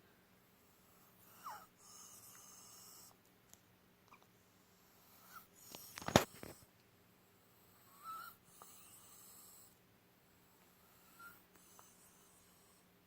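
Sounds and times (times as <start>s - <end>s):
hen wheezing raspy breaths: 0.6s - 3.2s, 4.7s - 6.7s, 10.4s - 13.0s.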